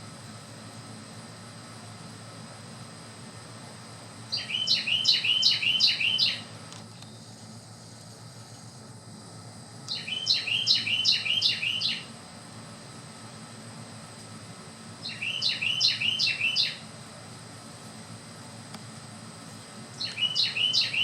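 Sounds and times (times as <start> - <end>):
songbird singing: 4.1 - 8.8, 9.8 - 12.2, 14.9 - 17.0, 19.4 - 21.0.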